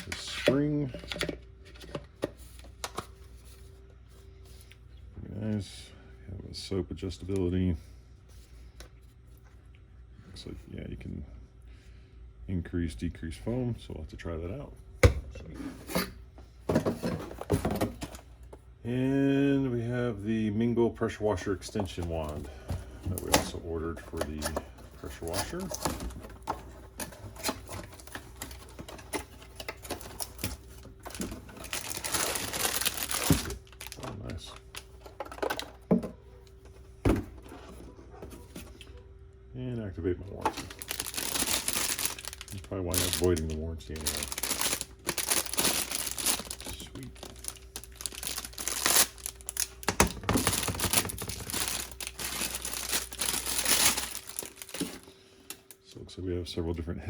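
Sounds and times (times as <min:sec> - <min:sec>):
box and plastic parts being handled: 0:15.6 - 0:18.2, 0:21.4 - 0:38.8, 0:40.4 - 0:55.8
packaging crinkling: 0:21.8 - 0:35.8, 0:40.4 - 0:55.8.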